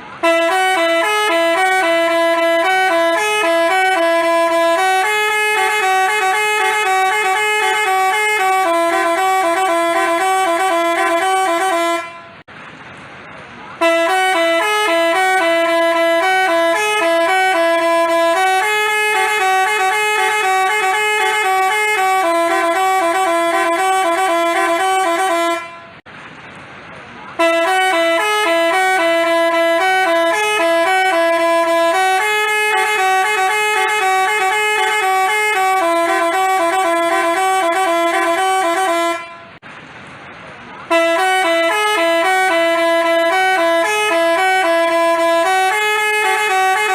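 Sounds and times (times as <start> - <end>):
bus horn playing melody: 0.0 - 12.5, 13.8 - 26.0, 27.4 - 39.6, 40.8 - 46.9.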